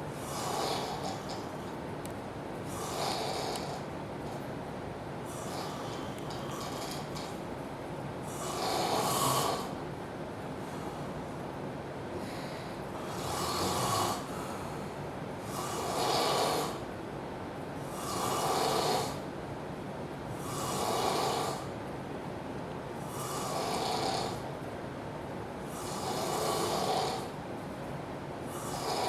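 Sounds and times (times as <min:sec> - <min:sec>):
man snoring loudly: 0:00.3 - 0:01.3, 0:02.8 - 0:03.8, 0:08.3 - 0:09.7, 0:13.1 - 0:14.3, 0:15.5 - 0:16.8, 0:18.0 - 0:19.2, 0:20.4 - 0:21.7, 0:23.2 - 0:24.4, 0:25.8 - 0:27.3, 0:28.6 - 0:29.0
quiet breathing: 0:12.1 - 0:16.8.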